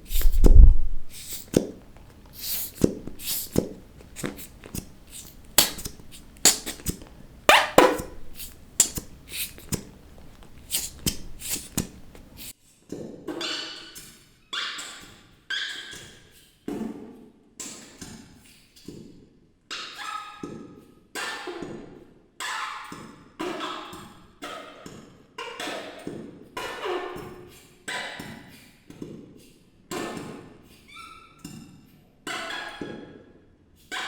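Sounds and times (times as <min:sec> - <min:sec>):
fart sound effects: 0:02.4 - 0:12.2.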